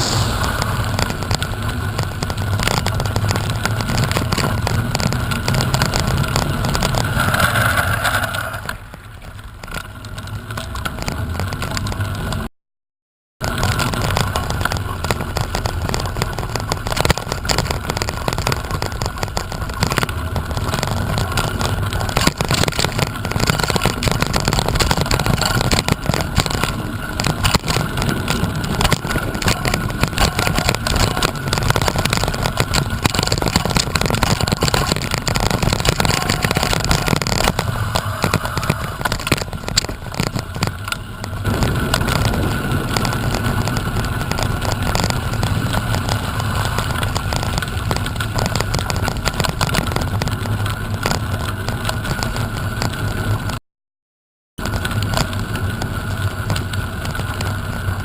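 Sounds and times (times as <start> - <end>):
wind buffeting microphone: 16.7 - 51.6.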